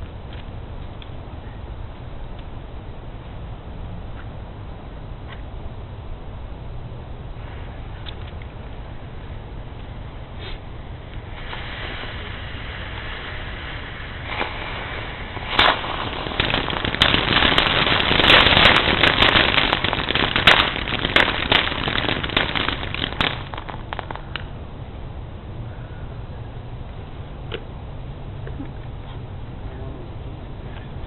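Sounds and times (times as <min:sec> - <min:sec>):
fireworks crackling and popping: 0:09.8 - 0:24.6
fireworks hissing: 0:10.3 - 0:24.5
firework bangs: 0:11.2 - 0:24.5.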